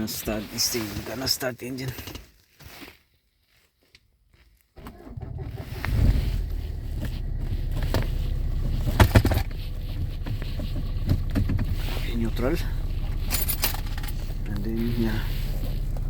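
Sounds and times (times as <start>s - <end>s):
car engine starting and idling: 4.8s - 16.0s.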